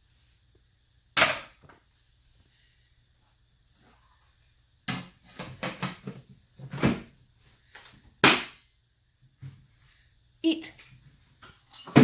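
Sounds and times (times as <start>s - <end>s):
household knocks and clatters: 4.9s - 7.2s, 11.3s - 12.0s.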